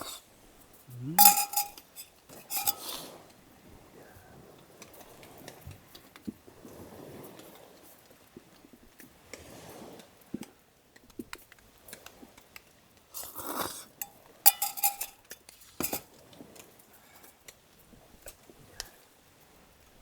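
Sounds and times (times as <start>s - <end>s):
utensil scraping: 1.1s - 3.1s, 14.5s - 15.2s, 15.8s - 16.0s
metal utensils clinking: 1.2s - 3.1s, 14.0s - 16.1s.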